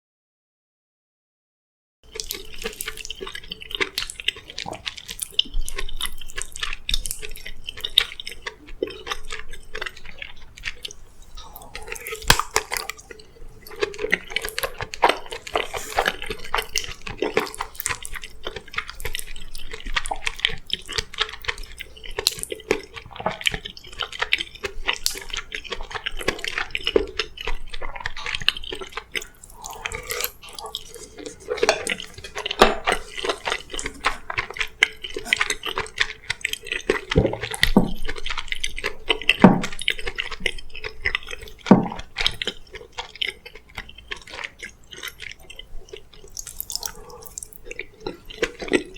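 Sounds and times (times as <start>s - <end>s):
wet chewing: 2.1s - 48.9s
spoon scraping a bowl: 15.4s - 16.7s.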